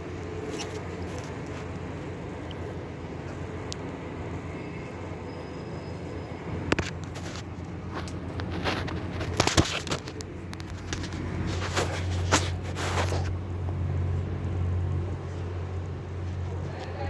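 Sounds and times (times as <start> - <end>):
truck engine running: 6.0 - 17.0.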